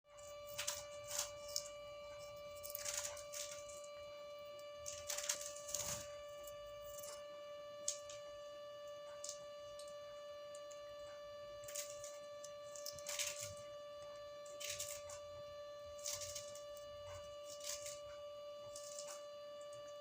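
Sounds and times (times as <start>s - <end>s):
steady high-pitched hum: 0.0s - 20.0s
parrot beak crunching food: 2.6s - 3.8s.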